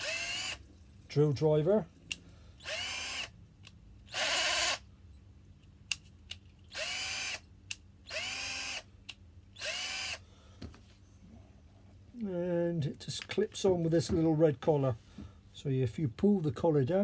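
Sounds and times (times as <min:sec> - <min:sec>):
cordless drill whirring: 0:00.0 - 0:00.6, 0:02.6 - 0:03.3, 0:04.1 - 0:04.8, 0:06.7 - 0:07.4, 0:08.1 - 0:08.9, 0:09.6 - 0:10.2.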